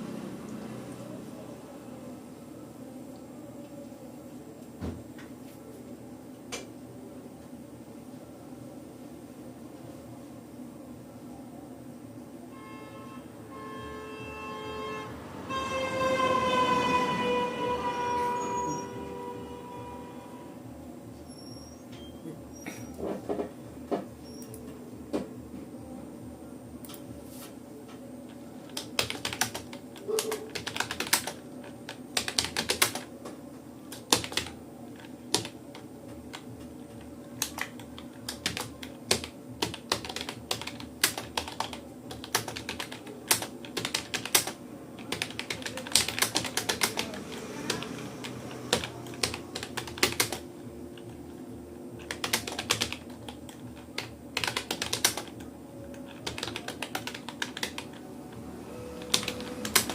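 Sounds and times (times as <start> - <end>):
computer keyboard typing: 28.7 - 33.1, 33.9 - 51.2, 52.0 - 58.1, 59.0 - 59.9.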